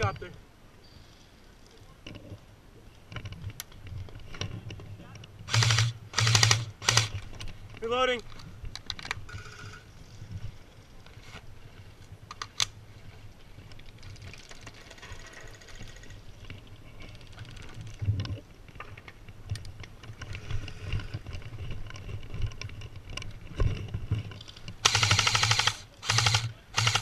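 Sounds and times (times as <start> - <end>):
airsoft gear clicking and rattling: 5.5 - 11.3, 13.6 - 27.0.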